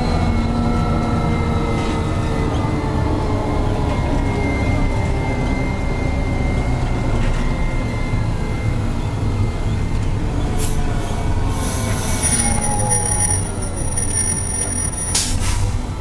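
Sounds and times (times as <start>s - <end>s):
tractor engine rumble: 9.6s - 16.0s
thin steady whine: 11.5s - 15.5s.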